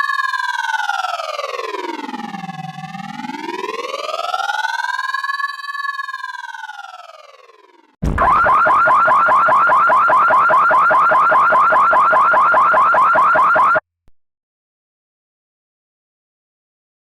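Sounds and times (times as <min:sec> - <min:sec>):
falling siren tone: 0:00.0 - 0:13.8
rapid warbling alarm chirp: 0:08.2 - 0:13.8.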